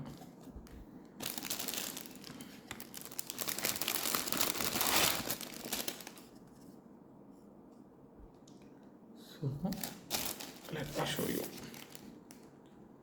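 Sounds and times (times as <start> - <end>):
packaging wrap crinkling: 1.2 - 6.4, 9.7 - 12.5.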